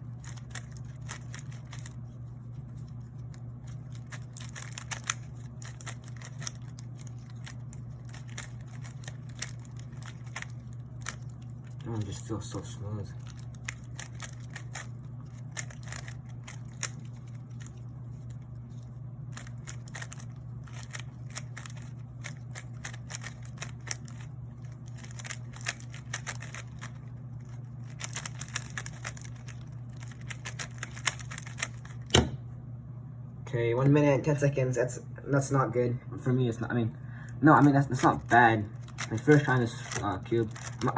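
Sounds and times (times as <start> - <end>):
speed cube clicking and rattling: 0.1 - 2.1, 2.8 - 12.2, 13.2 - 17.8, 19.3 - 32.1, 37.6 - 40.9.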